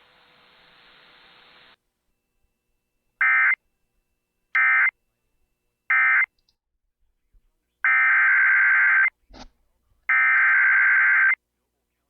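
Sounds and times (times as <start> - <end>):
faint hiss: 0.0 - 1.8.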